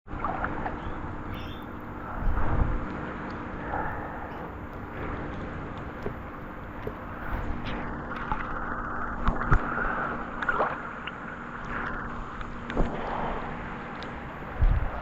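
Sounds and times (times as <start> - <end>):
low hum: 0.1 - 15.0
low rumble: 0.1 - 15.0
water splashing from swimming: 0.1 - 15.0
heavy rain on water: 1.0 - 10.3.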